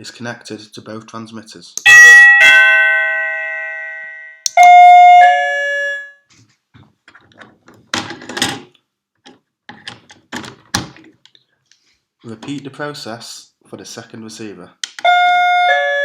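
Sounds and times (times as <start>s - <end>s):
doorbell chiming ding-dong: 1.9s - 6.2s.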